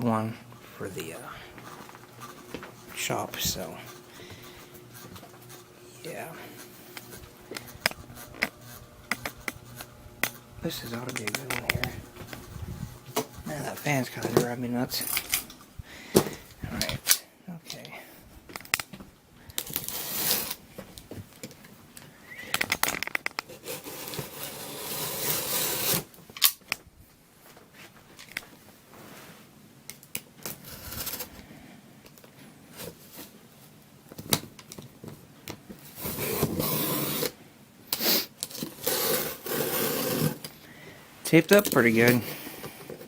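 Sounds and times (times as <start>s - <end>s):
packing tape tearing: 19.6s - 20.6s, 22.5s - 26.6s, 35.9s - 37.4s, 38.0s - 40.6s.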